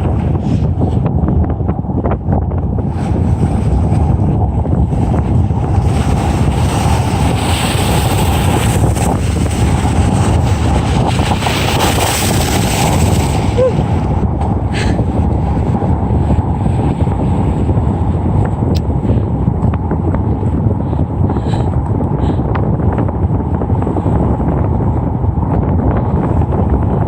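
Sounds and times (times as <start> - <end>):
wind buffeting microphone: 0.0 - 27.0
waves splashing: 5.9 - 14.1.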